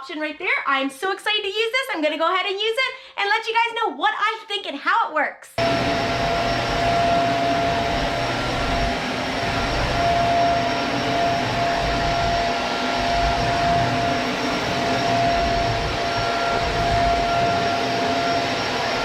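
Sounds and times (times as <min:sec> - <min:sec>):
vacuum cleaner running: 0:05.6 - 0:19.0.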